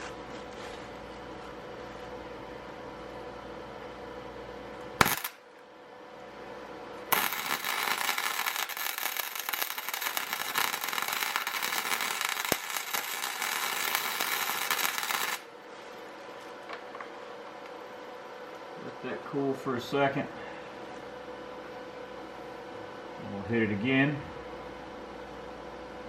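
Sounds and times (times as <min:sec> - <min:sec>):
welder arc crackling: 0:04.9 - 0:05.7, 0:07.1 - 0:16.0.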